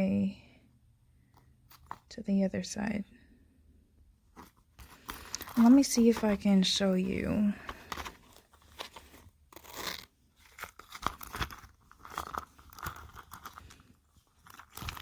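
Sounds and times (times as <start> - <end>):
key pouch rustling and crinkling: 1.3 - 2.1, 4.3 - 15.0.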